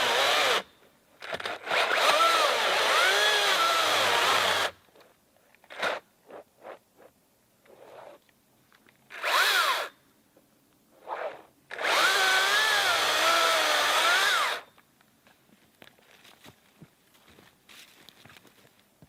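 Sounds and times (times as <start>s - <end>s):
cordless chainsaw motor: 0.0s - 4.8s, 9.1s - 9.9s, 11.7s - 14.7s.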